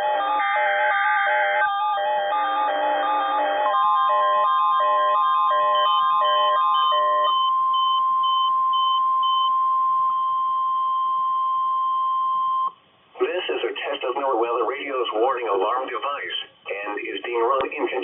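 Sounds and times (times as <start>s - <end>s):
steady warning alarm tone: 0.0s - 12.8s
faint high beeps: 6.4s - 12.8s
short beeps: 6.8s - 12.8s.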